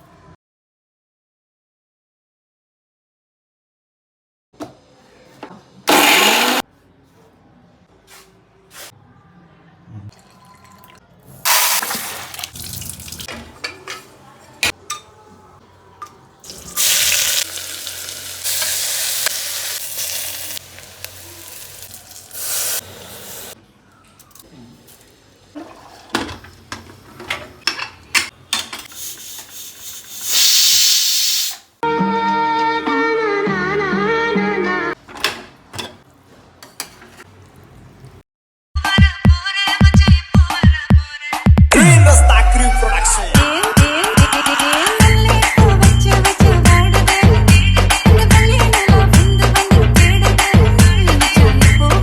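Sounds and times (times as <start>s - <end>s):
water running: 10.2s - 14.1s, 16.4s - 23.6s, 24.9s - 27.0s
loud steady hiss: 30.2s - 31.7s.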